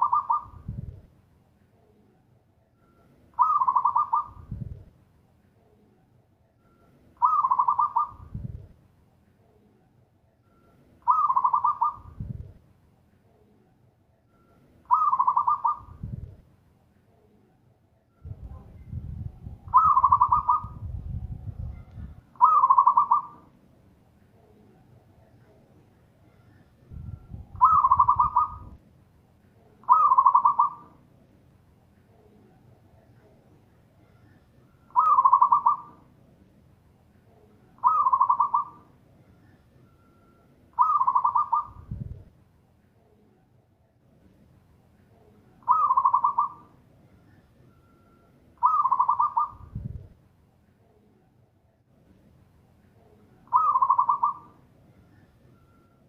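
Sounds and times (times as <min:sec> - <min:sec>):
dove cooing: 0:00.0 - 0:00.7, 0:03.4 - 0:04.6, 0:07.2 - 0:08.3, 0:11.0 - 0:12.4, 0:14.9 - 0:16.0, 0:19.7 - 0:20.8, 0:22.4 - 0:23.5, 0:27.6 - 0:28.7, 0:29.8 - 0:31.0, 0:34.9 - 0:36.1, 0:37.8 - 0:38.9, 0:40.8 - 0:41.9, 0:45.6 - 0:46.7, 0:48.6 - 0:49.7, 0:53.5 - 0:54.6
low rumble: 0:18.2 - 0:22.3.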